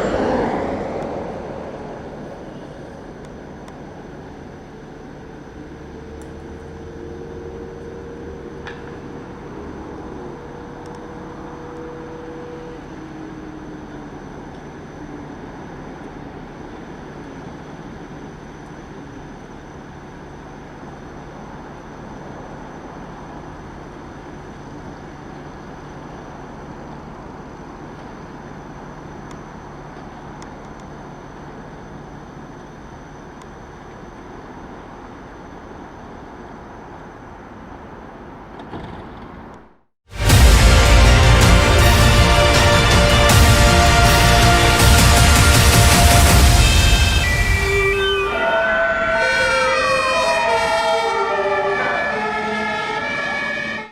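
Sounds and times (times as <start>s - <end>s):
road noise: 0.0s - 18.3s, 34.4s - 53.9s
vehicle engine hum: 0.0s - 19.5s
higher tones: 40.1s - 53.9s.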